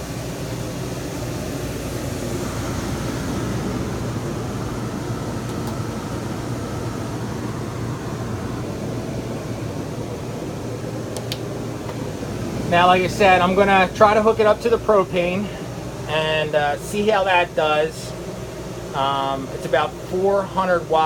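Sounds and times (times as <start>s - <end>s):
air conditioner humming: 0.0s - 21.0s.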